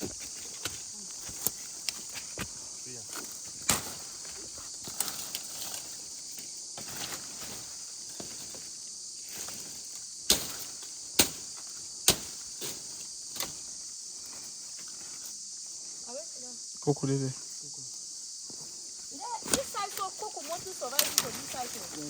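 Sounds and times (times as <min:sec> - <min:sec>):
sharp cracks and crunches: 0:00.0 - 0:05.8, 0:10.2 - 0:13.6
high-pitched insect chorus: 0:00.0 - 0:22.0.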